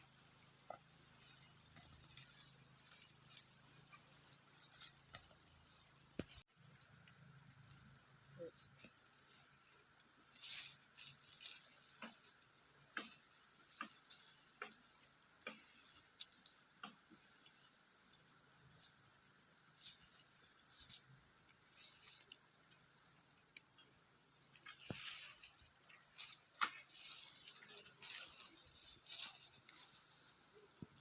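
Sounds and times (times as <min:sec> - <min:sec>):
insects chirring: 0:00.0 - 0:31.0.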